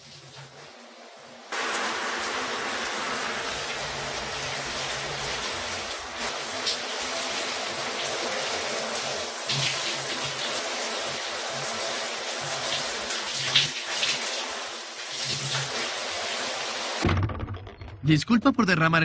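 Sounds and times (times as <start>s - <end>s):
rushing water: 0.0s - 17.0s
water splashes: 1.4s - 17.0s.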